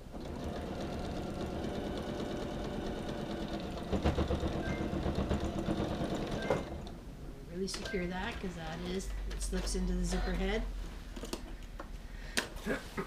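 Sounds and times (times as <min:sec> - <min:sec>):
electric sewing machine running: 0:00.0 - 0:06.9.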